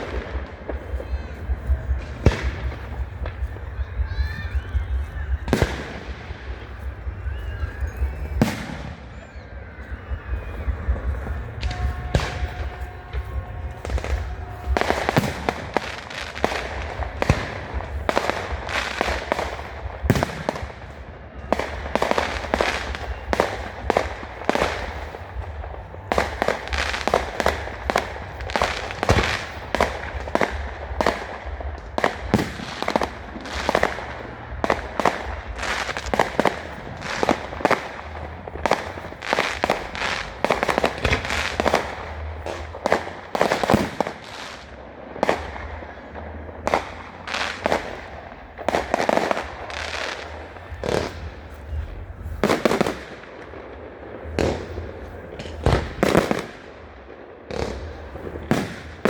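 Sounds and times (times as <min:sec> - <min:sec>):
low rumble: 0:00.0 - 0:44.0
fireworks bangs and crackling: 0:00.0 - 0:59.0.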